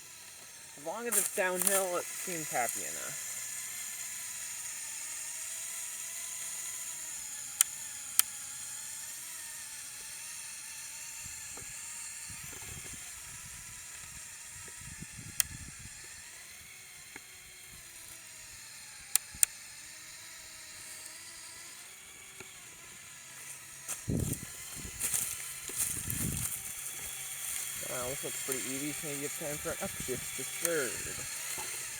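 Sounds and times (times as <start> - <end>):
electric motors whining: 0.0 - 31.9
rough scraping rustle: 0.8 - 3.1, 23.4 - 31.9
drivetrain clicks: 25.4 - 31.9.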